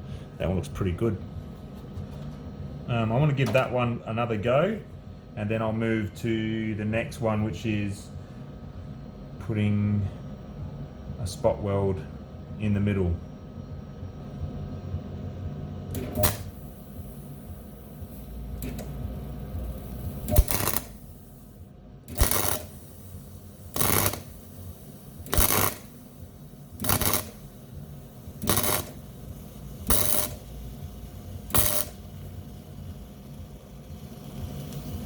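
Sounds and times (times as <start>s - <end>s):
welder arc crackling: 15.9s - 35.0s.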